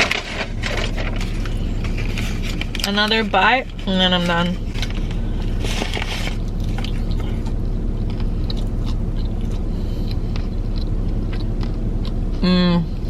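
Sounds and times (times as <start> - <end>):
low hum inside car: 0.0 - 13.0
chewing food with wet smacks: 4.6 - 12.4.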